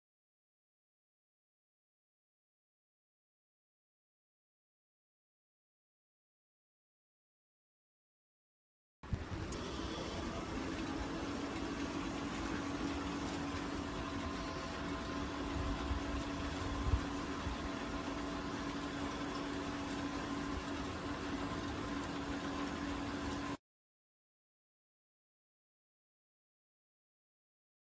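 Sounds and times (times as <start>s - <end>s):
rotisserie motor humming: 9.0s - 23.6s.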